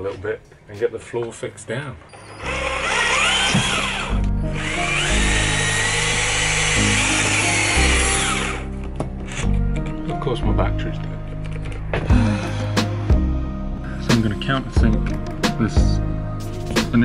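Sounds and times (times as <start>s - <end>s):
cordless drill drilling: 2.2s - 9.4s.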